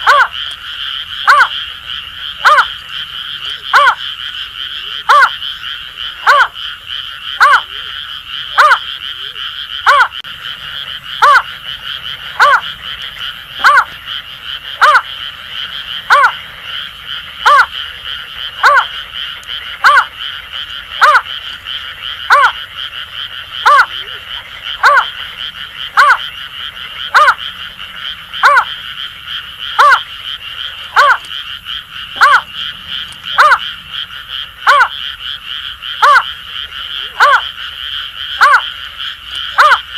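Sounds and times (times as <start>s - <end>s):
high-pitched frog chorus: 0.0s - 39.9s
bird hooting call: 30.9s - 31.3s, 32.2s - 33.6s.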